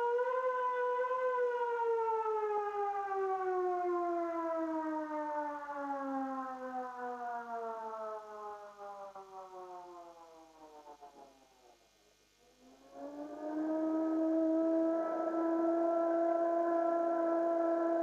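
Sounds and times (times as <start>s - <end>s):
siren winding down: 12.9s - 18.0s.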